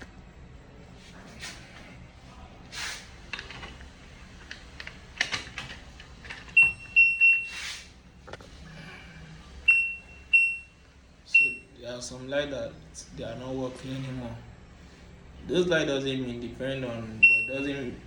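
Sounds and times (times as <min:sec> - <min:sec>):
clicks and rustles of handling: 0:03.2 - 0:06.7
washing machine control panel beeps: 0:06.6 - 0:07.6, 0:09.7 - 0:11.8, 0:17.2 - 0:18.0.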